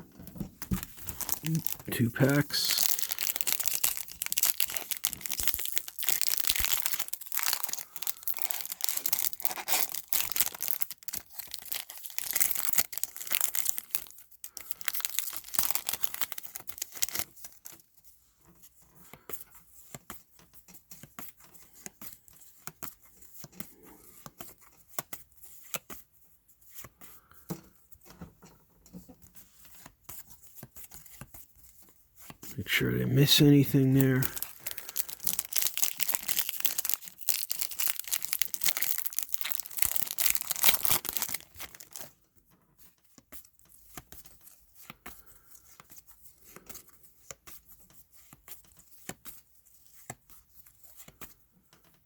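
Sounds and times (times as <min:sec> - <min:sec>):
foil wrappers tearing and crinkling: 0:00.7 - 0:17.6, 0:33.3 - 0:42.1.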